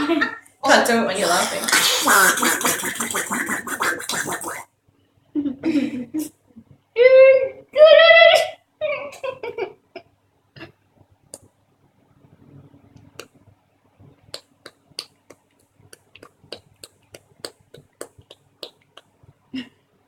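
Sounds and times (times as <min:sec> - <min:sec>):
child clicking tongue: 0:01.6 - 0:04.6, 0:14.3 - 0:19.1.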